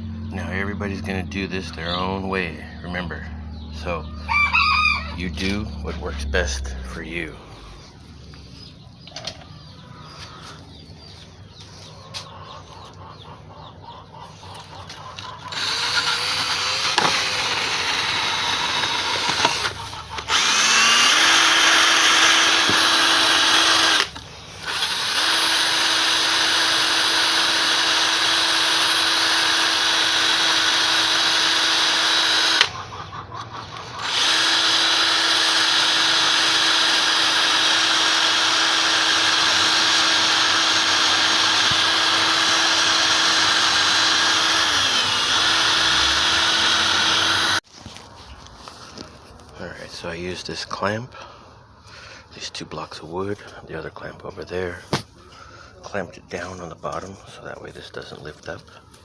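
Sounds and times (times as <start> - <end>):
power drill whining: 14.5 - 33.0, 33.7 - 48.0.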